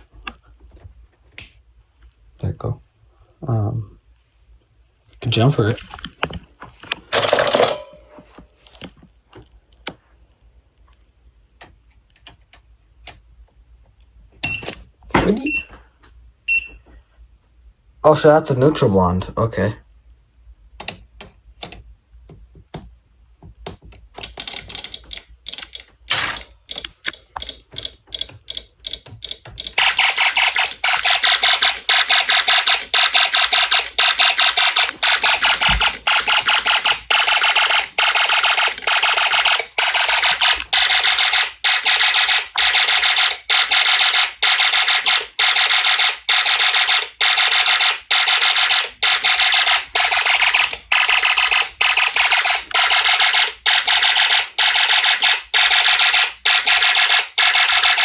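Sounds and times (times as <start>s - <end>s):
electronic alarm beeping: 14.4s - 15.8s, 16.5s - 16.8s, 29.8s - 58.0s.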